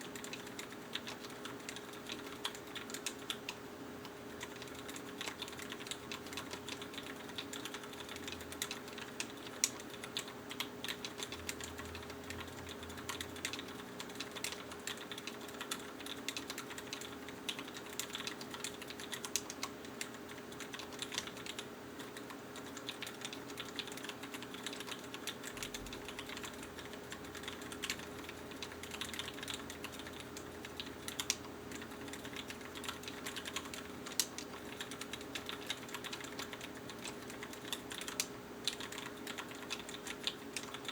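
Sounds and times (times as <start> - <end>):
faint steady hum: 0.0 - 40.9
mechanical keyboard typing: 0.0 - 40.9.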